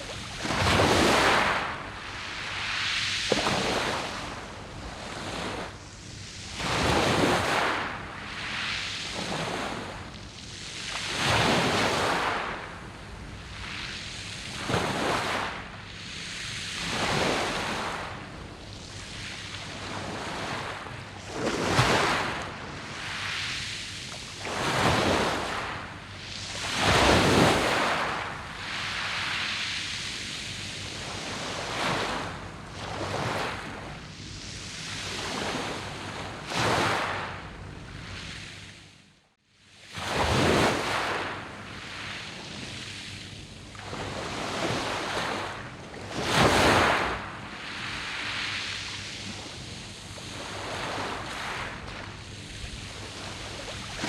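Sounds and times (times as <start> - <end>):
waves breaking on pebbles: 0.0 - 4.4, 24.3 - 29.6.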